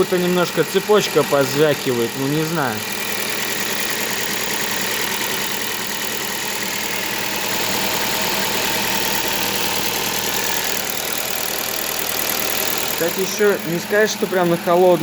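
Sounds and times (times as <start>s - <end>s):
car engine idling: 0.0s - 15.0s
light engine rattle: 0.0s - 15.0s.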